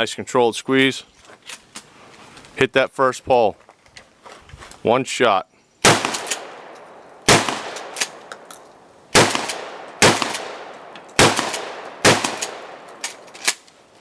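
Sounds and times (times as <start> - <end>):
gunshots echoing: 5.8 - 13.6.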